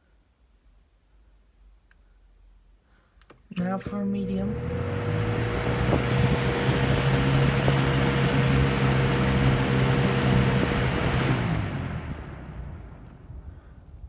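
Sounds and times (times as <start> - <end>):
fan motor electrical hum: 3.5 - 14.0
fan air rushing: 3.9 - 14.0.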